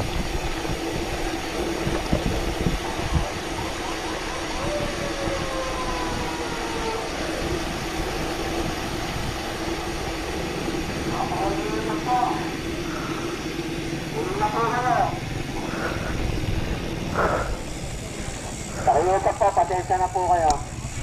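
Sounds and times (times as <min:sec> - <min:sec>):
wind buffeting microphone: 0:00.0 - 0:18.9
steady hum: 0:06.1 - 0:21.0.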